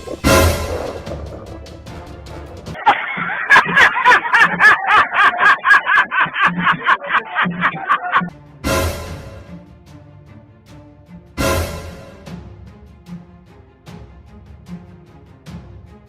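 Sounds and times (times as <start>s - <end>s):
comic pulsing music effect: 0.0s - 2.8s.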